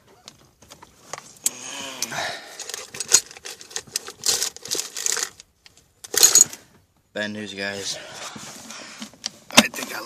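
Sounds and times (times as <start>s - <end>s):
rustling: 2.5s - 6.8s, 7.6s - 10.0s
hard objects clicking and clattering: 2.6s - 6.6s.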